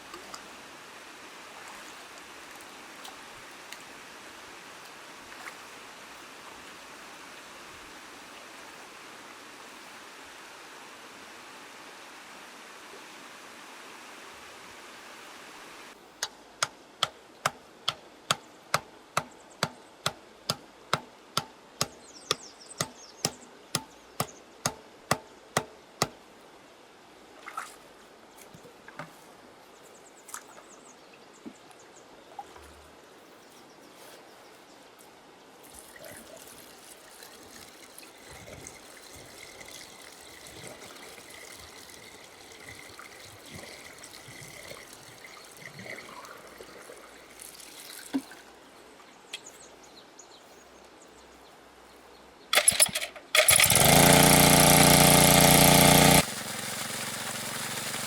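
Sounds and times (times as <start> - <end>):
running water: 0.0 - 26.2, 35.5 - 49.3, 52.6 - 58.0
sharp knocks: 16.6 - 26.2.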